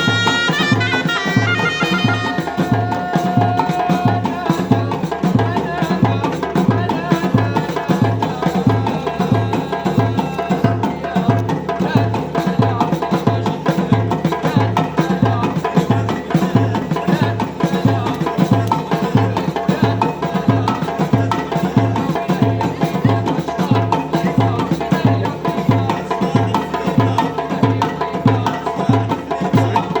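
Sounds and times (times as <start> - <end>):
fast clacking percussion: 0.0 - 30.0.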